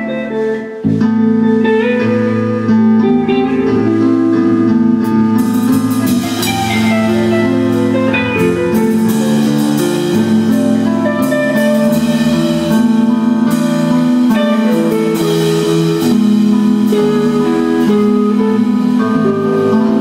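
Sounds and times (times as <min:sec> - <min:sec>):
guitar: 0:00.0 - 0:20.0
organ chords: 0:00.0 - 0:20.0
cymbal and drum strokes: 0:05.0 - 0:19.1.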